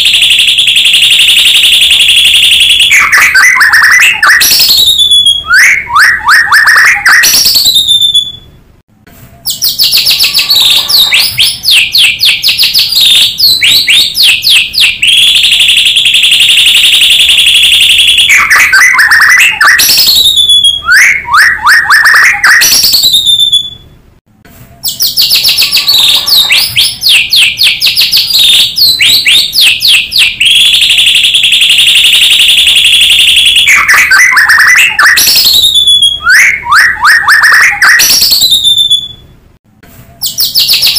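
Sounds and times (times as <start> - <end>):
bird trill: 0.0 - 8.6, 9.3 - 23.9, 24.8 - 39.3, 40.1 - 40.9
songbird chattering and whistling: 9.4 - 15.2, 24.8 - 30.4, 40.2 - 40.9.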